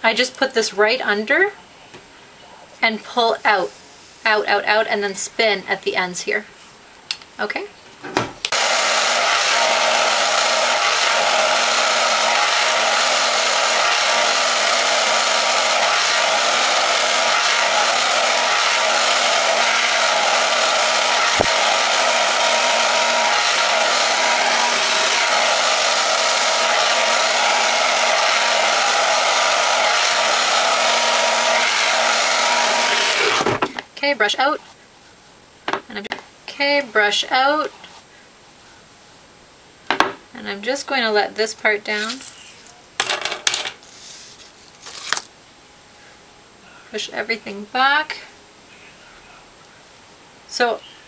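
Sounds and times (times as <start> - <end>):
hair dryer blowing: 8.5 - 33.8.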